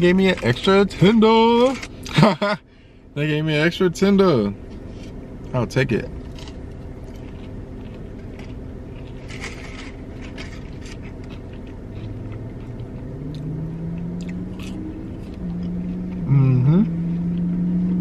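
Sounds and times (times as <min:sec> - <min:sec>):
low hum: 0:00.0 - 0:18.0
crunchy chewing: 0:06.1 - 0:16.2.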